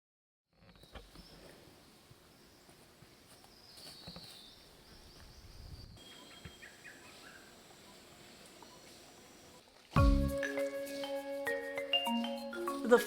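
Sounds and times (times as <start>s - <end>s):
insects droning: 0.6s - 10.0s
bird chirps: 3.4s - 11.2s.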